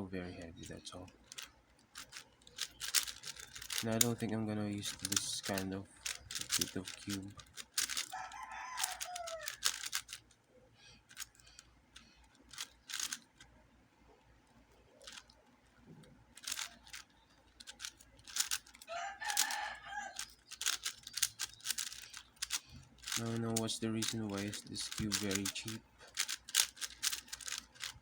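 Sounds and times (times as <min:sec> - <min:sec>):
plastic puzzle cube clicks: 0:01.2 - 0:10.4, 0:11.1 - 0:13.5, 0:15.0 - 0:15.4, 0:16.3 - 0:19.5, 0:20.1 - 0:28.0
rooster crowing: 0:08.0 - 0:09.8, 0:18.8 - 0:20.4.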